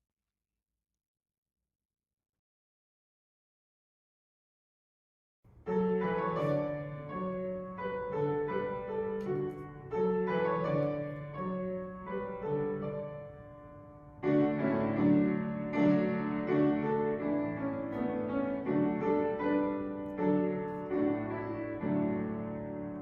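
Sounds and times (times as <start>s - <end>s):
slow piano chords: 5.5s - 23.0s.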